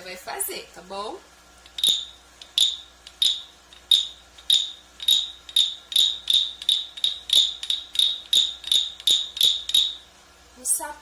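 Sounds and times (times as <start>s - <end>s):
imitated frog call clicks: 1.6s - 10.1s.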